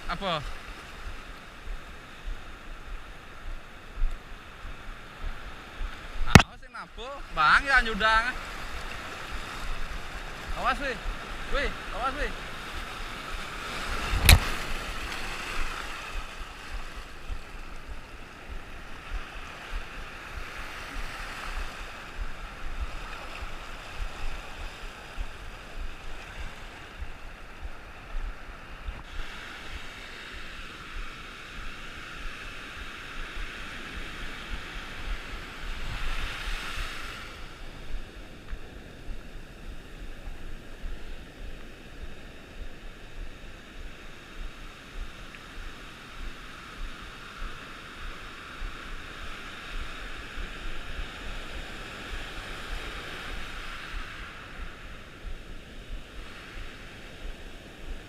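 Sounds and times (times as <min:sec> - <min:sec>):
waves breaking: 0:00.0 - 0:58.0
wind buffeting microphone: 0:08.3 - 0:58.0
sharp thump: 0:14.1 - 0:14.6.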